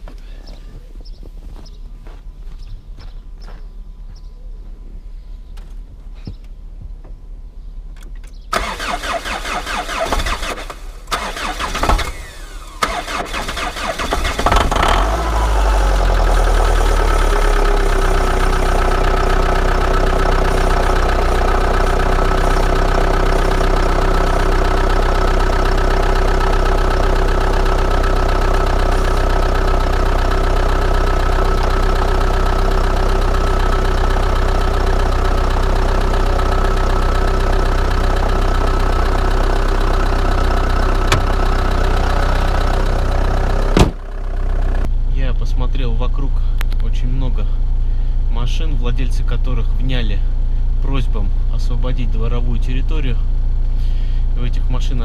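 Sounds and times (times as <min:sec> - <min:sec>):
diesel engine cranking: 0:08.0 - 0:44.9
diesel engine idling: 0:08.5 - 0:55.0.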